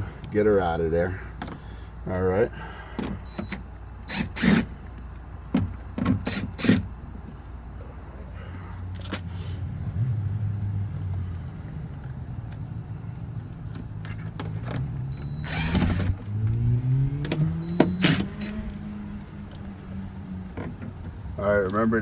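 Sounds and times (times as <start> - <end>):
low hum rising in pitch: 9.6 - 21.4
sharp clicks: 13.6 - 19.7.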